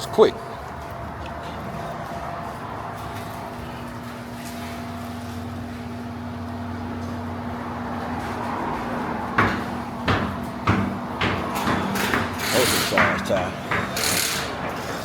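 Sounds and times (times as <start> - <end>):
sharp knocks: 9.3 - 15.0.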